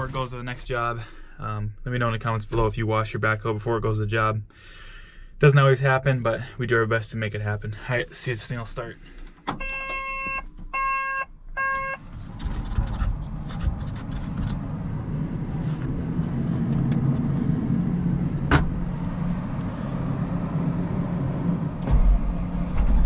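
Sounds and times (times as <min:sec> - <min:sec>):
short electronic beeps: 0:09.6 - 0:12.0
diesel engine starting and idling: 0:10.8 - 0:23.0.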